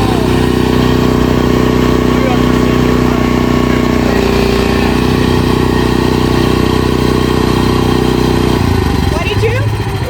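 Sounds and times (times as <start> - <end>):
engine running steadily: 0.0 - 10.0.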